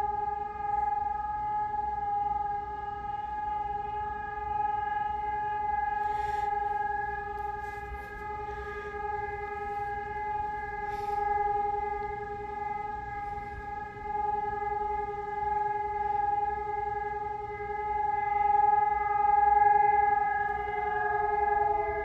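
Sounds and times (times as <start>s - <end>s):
siren steady tone: 0.0s - 22.0s.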